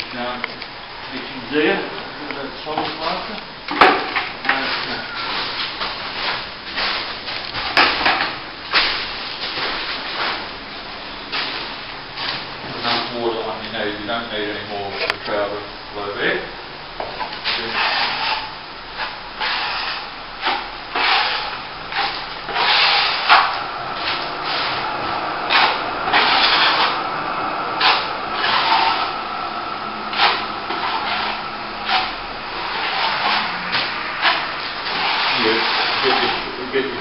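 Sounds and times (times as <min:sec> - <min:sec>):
trowel scraping plaster: 0:17.5 - 0:24.8, 0:25.5 - 0:27.0, 0:27.8 - 0:29.0, 0:30.1 - 0:33.5, 0:34.2 - 0:36.5.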